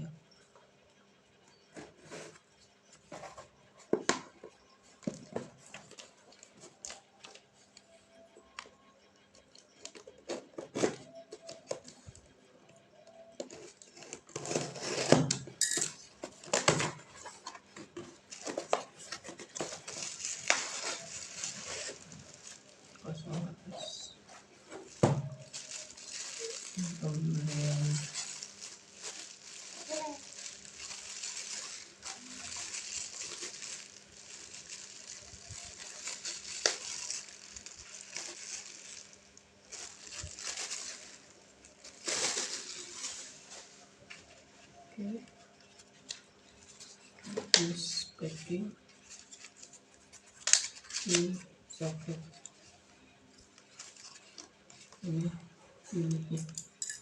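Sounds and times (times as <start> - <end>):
packaging rustling and scraping: 1.7 - 8.2, 9.5 - 12.3, 13.3 - 44.8, 45.6 - 52.8, 53.5 - 55.0.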